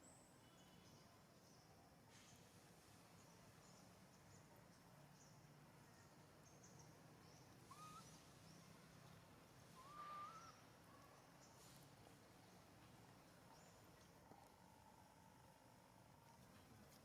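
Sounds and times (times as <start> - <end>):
faint high chirps: 5.8 - 8.8, 9.7 - 11.9
wavering animal call: 7.6 - 8.2, 9.7 - 10.7
whistle-like animal call: 7.7 - 8.0, 9.8 - 10.6.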